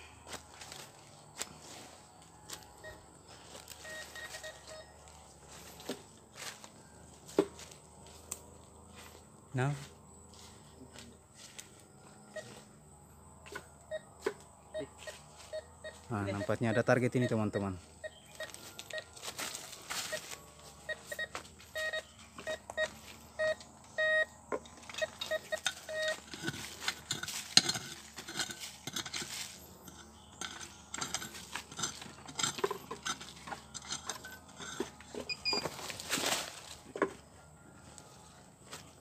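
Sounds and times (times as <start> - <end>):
metal detector beeps: 2.5 - 5.1, 12.3 - 12.6, 13.9 - 14.1, 14.7 - 27.2, 32.4 - 35.9.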